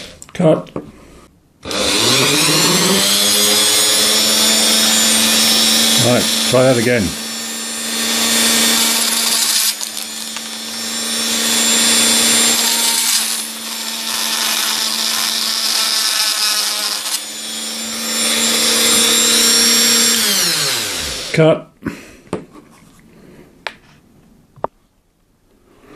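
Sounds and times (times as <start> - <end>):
rotary tool grinding plastic: 1.6 - 21.4.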